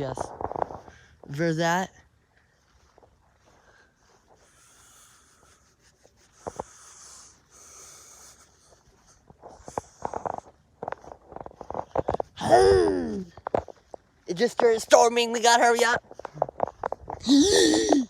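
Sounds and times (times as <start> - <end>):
footsteps: 0.0 - 18.0
person breathing heavily: 2.6 - 10.5, 17.1 - 18.0.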